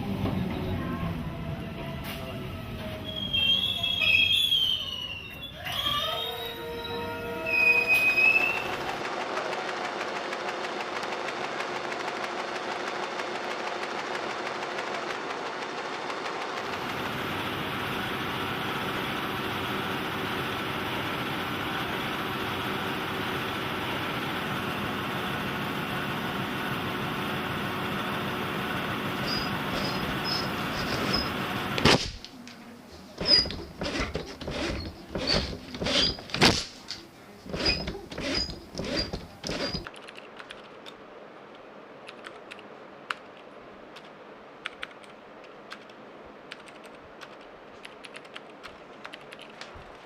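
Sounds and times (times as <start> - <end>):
train rolling noise: 0.0 - 31.8.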